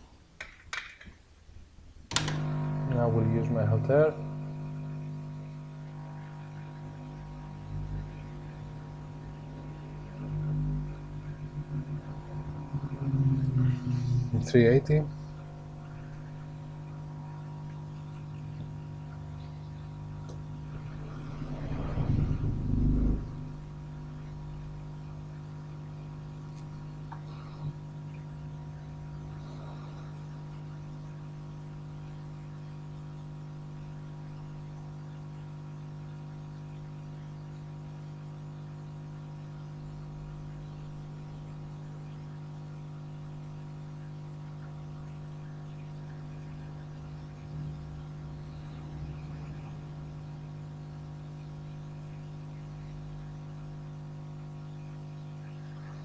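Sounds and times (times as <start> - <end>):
click: 2.1 - 2.5
hot air blower hum: 2.1 - 33.0.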